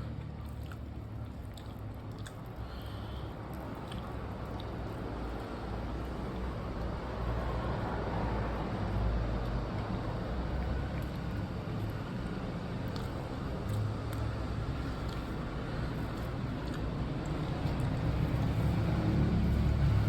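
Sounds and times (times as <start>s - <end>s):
person chewing food: 0.0s - 20.0s
steady low rumble: 0.0s - 20.0s
small wet clicks: 9.4s - 18.2s.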